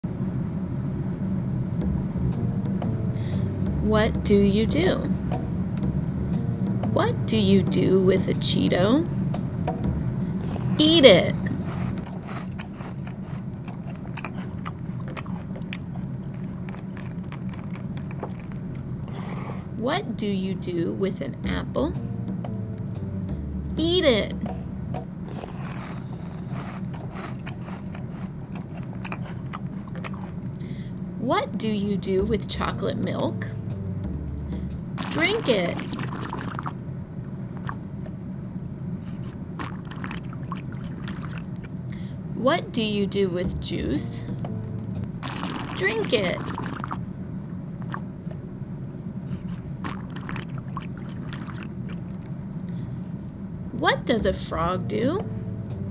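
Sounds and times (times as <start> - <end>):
steady low hum: 0.0 - 55.9
gulping and swallowing: 1.8 - 36.8, 39.1 - 47.1, 49.3 - 52.8
crunchy snack chewing: 10.1 - 19.8, 24.4 - 30.8, 34.3 - 36.8, 39.0 - 42.0, 44.8 - 47.1, 49.3 - 52.8.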